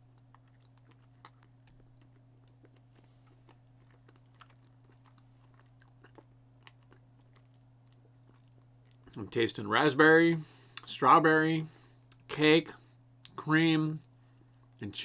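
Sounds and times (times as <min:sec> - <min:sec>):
soft wet chewing: 0:00.0 - 0:09.3, 0:11.8 - 0:12.3, 0:14.2 - 0:14.9
steady low hum: 0:00.0 - 0:15.0.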